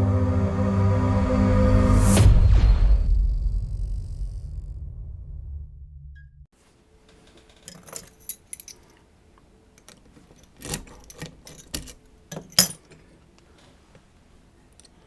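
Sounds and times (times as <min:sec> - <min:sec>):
lock picking metal clicks: 0:07.6 - 0:08.9, 0:09.8 - 0:13.0.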